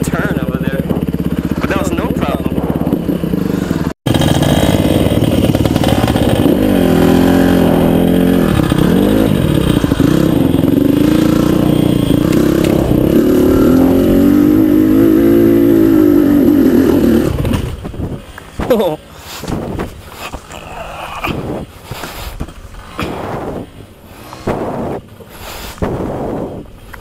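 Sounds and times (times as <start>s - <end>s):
dirt bike engine revving: 0.0s - 20.5s.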